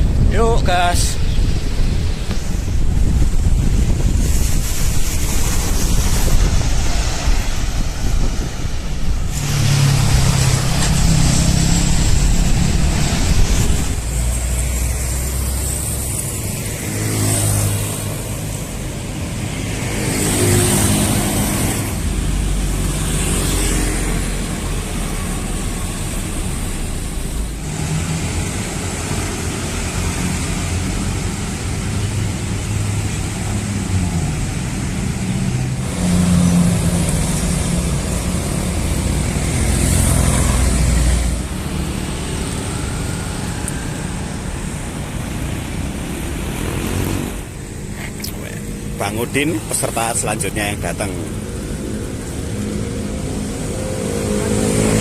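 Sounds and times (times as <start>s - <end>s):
wind rumble on microphone: 0.0s - 16.8s
vehicles passing close by: 0.0s - 55.0s.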